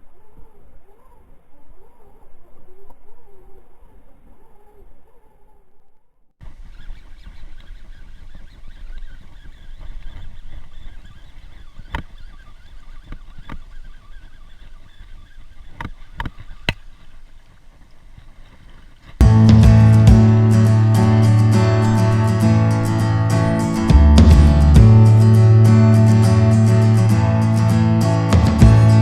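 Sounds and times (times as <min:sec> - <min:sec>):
acoustic guitar music: 0:19.2 - 0:29.0.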